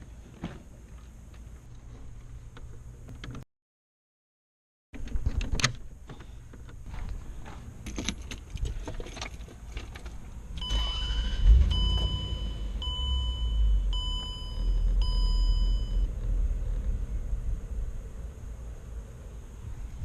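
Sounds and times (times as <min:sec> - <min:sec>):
car engine starting and rumbling: 0:06.6 - 0:20.0
keys jangling: 0:07.8 - 0:10.2
dashboard warning chime: 0:10.6 - 0:16.1.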